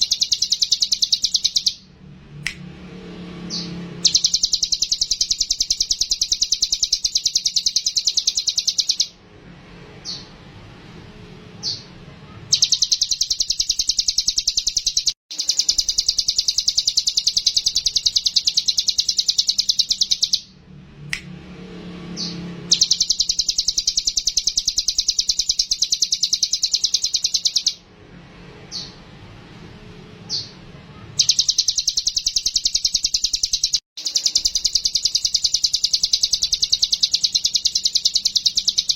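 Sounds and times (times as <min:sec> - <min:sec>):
songbird chattering trill: 0:00.0 - 0:01.8, 0:04.0 - 0:09.1, 0:12.5 - 0:20.4, 0:22.7 - 0:27.8, 0:31.2 - 0:38.9.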